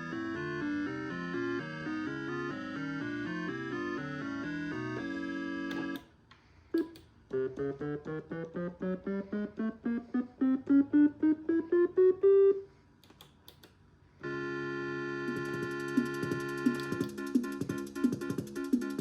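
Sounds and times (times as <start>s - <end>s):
button clicks: 6.8s - 7.1s, 13.0s - 13.8s
electronic instrument rising notes: 14.2s - 19.0s
sustained electronic chord: 14.2s - 19.0s.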